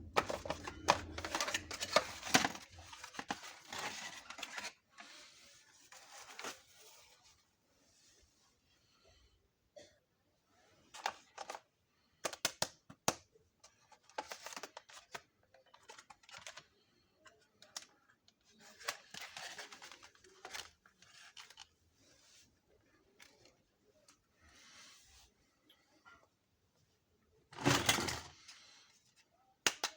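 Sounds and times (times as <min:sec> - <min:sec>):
packaging rustling and crinkling: 0:00.0 - 0:07.2.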